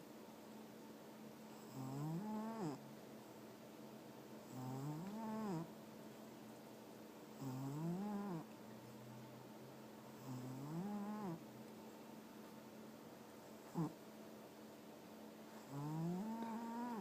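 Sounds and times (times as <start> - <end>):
cat snoring: 1.5 - 2.8, 4.4 - 5.7, 7.4 - 8.5, 10.2 - 11.4, 13.7 - 14.0, 15.6 - 17.0.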